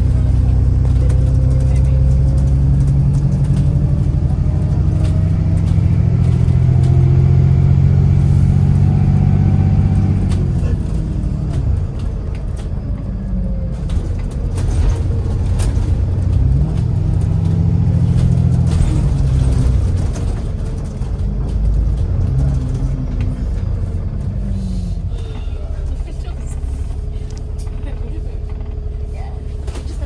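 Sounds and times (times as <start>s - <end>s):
bus engine pulling: 0.0s - 30.0s
knocks and rattles: 8.6s - 24.5s.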